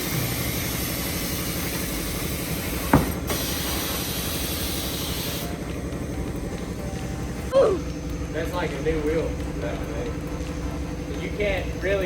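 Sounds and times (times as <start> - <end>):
compressed air hissing: 0.0 - 5.6
machinery running: 0.0 - 12.0.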